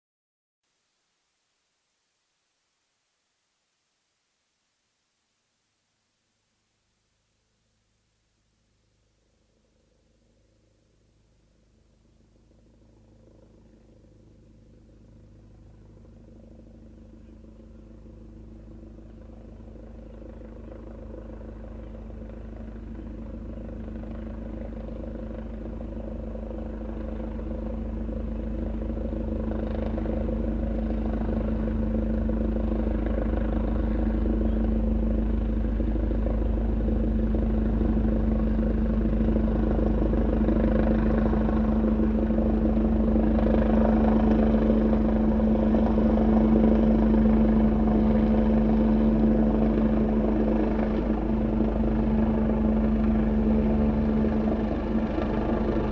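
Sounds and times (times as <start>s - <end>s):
helicopter rotor and engine: 11.8s - 55.9s.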